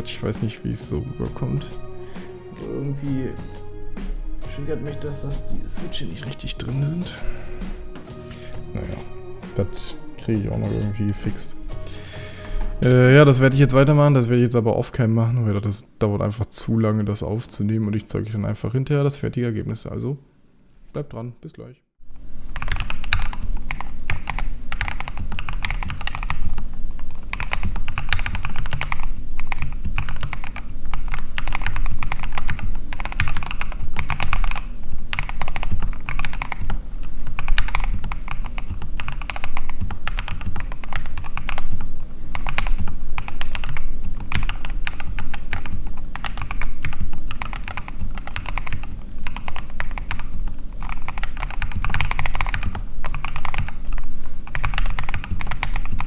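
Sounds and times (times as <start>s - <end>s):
mechanical keyboard typing: 22.5s - 56.0s.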